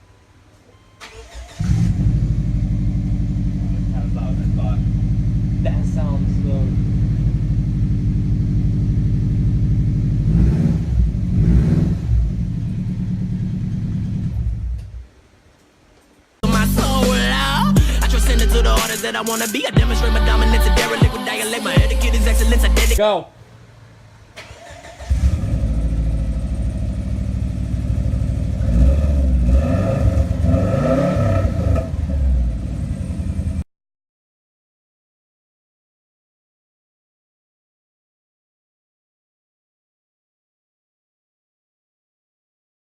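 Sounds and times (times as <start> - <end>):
car engine idling and revving: 1.2 - 15.1, 21.8 - 33.6.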